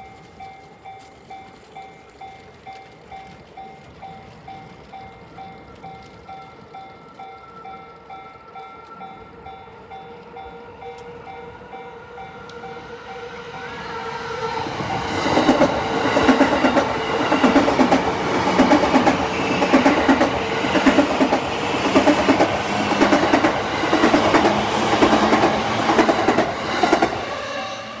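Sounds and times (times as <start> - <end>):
crossing warning bell ringing: 0.0 - 28.0
train wheels clattering over joints: 14.6 - 27.2.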